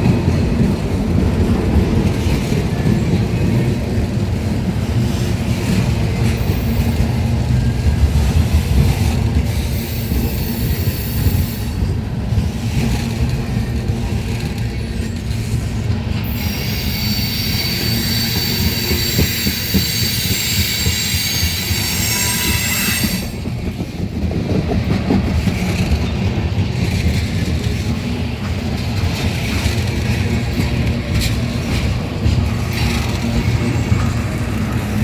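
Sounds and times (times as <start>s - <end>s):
freight train cars rumbling: 0.0s - 35.0s
metallic wheel squeal: 16.3s - 23.4s.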